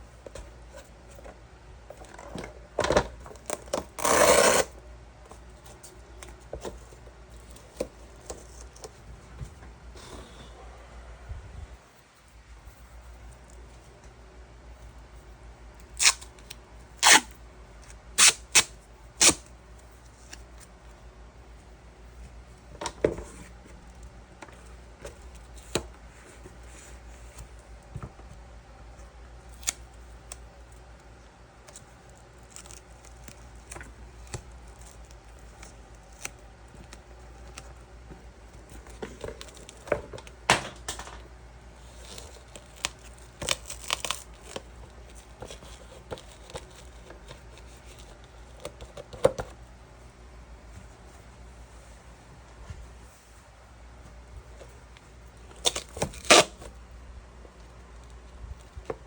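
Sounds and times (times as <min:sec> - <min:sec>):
tape ripping: 0:03.5 - 0:04.7, 0:16.0 - 0:17.4, 0:18.2 - 0:19.5, 0:41.8 - 0:44.6, 0:55.6 - 0:56.7.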